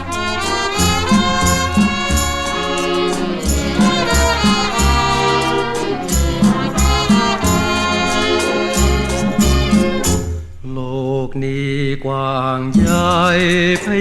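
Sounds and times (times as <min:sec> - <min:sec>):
orchestral pop ballad: 0:00.0 - 0:10.4.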